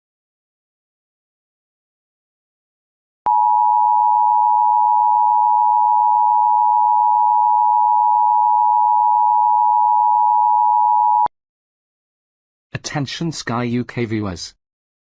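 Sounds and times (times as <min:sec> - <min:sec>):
two-tone alarm signal: 0:03.3 - 0:11.3.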